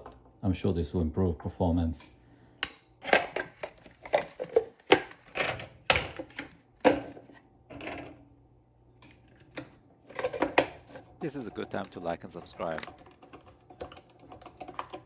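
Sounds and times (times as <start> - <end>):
plastic parts rattling: 12.8 - 15.0.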